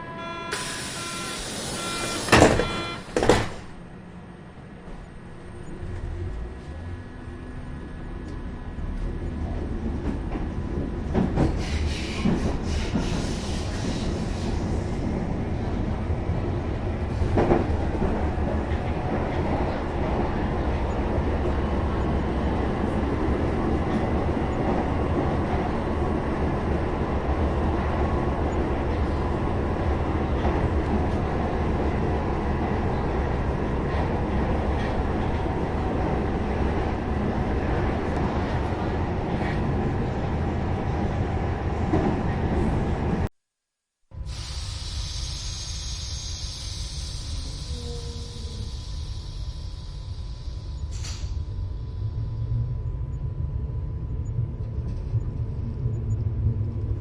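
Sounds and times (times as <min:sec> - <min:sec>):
train rumbling: 0:00.0 - 0:43.3, 0:44.2 - 0:57.0
brief hissing: 0:00.5 - 0:02.3, 0:11.6 - 0:14.8, 0:44.2 - 0:51.4.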